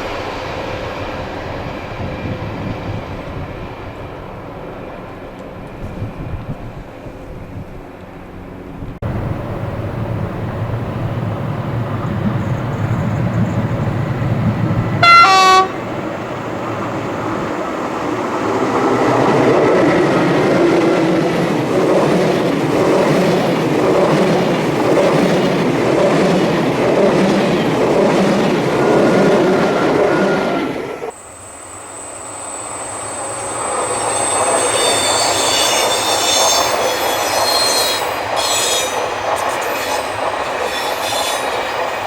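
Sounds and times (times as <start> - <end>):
train wheels rumbling: 0.0 - 42.0
train horn blast: 15.0 - 15.9.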